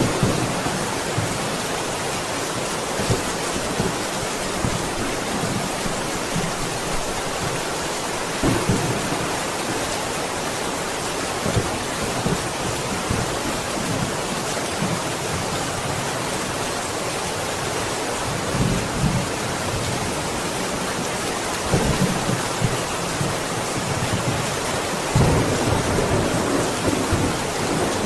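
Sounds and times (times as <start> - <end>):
heavy rain falling: 0.0 - 28.0
thunder rumbling: 8.4 - 9.8, 21.6 - 28.0.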